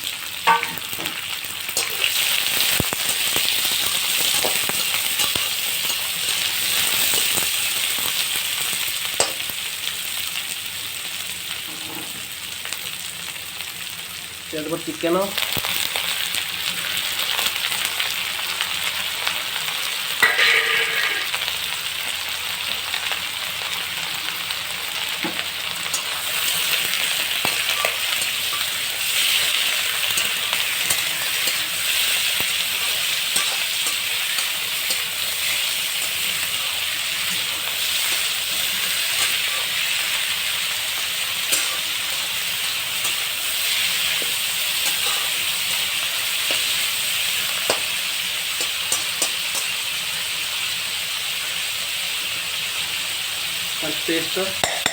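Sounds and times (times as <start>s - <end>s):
chicken sizzling in hot oil: 0.0s - 54.9s
metal clang: 0.5s - 1.2s, 20.2s - 21.2s, 54.6s - 54.9s.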